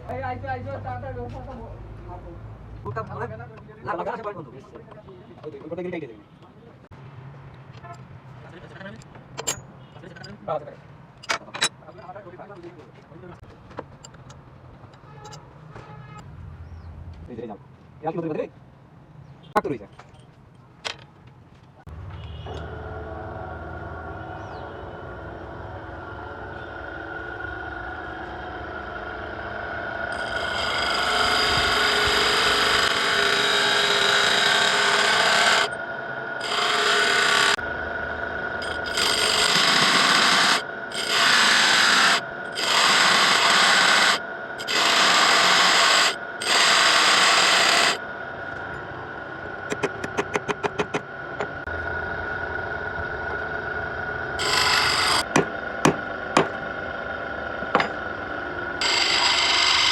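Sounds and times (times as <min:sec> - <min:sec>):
saw blade being sharpened: 0:38.6 - 0:48.0, 0:58.8 - 0:59.9.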